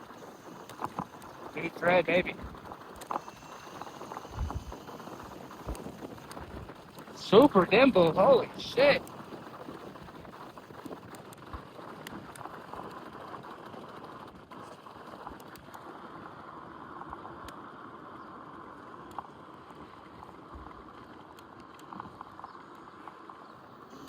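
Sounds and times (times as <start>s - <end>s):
small clicks and rattles: 0.0s - 8.3s, 9.0s - 16.0s
scooter tyres on road: 0.0s - 24.0s.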